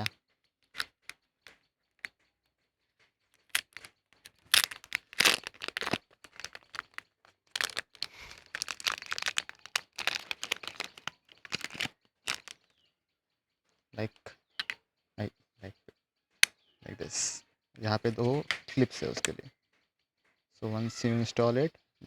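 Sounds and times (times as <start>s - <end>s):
packaging crinkling and rustling: 3.4s - 12.6s.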